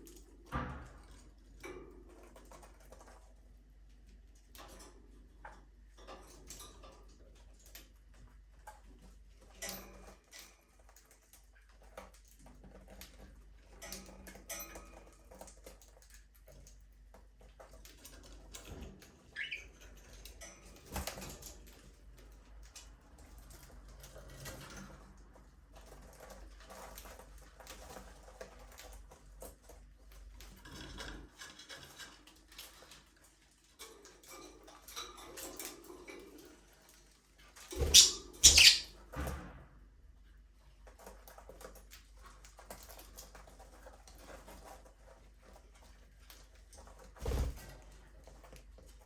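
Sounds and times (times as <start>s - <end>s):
budgerigars chirping: 37.8s - 38.9s.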